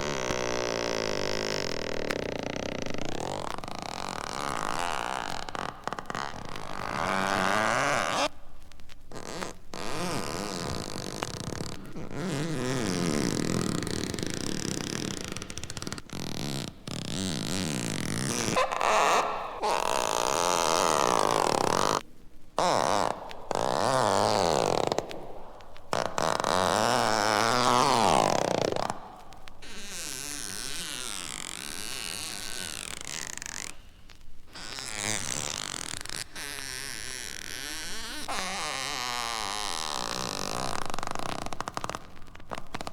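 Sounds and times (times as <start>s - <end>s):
raspy warbling buzzy noise: 18.4s - 22.0s.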